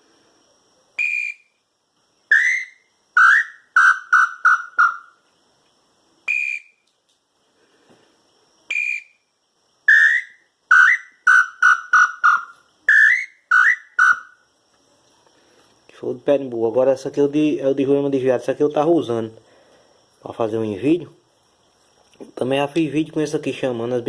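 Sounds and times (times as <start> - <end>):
wooden bird call whistled hoots: 1.0 - 1.5, 2.3 - 5.3, 6.2 - 6.8, 8.7 - 9.2, 9.8 - 14.5.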